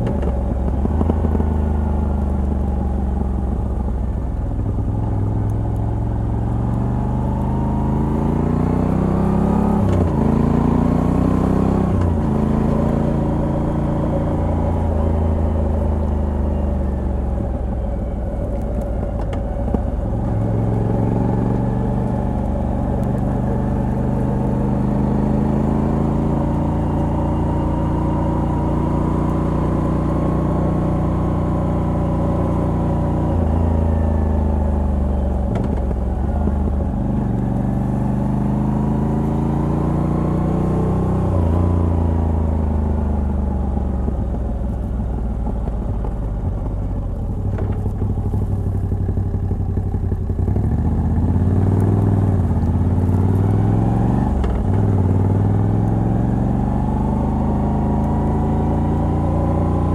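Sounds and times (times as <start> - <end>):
motorcycle engine under load: 41.0 - 59.9.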